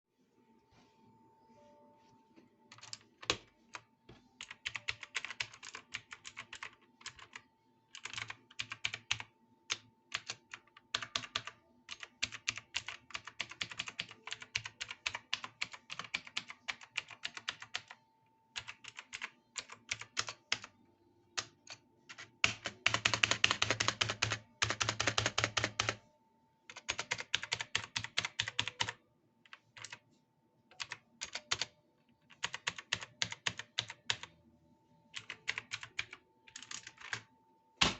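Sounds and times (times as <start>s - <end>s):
typing on keyboard: 2.7s - 26.0s, 26.7s - 30.1s, 30.7s - 34.4s, 35.1s - 37.9s.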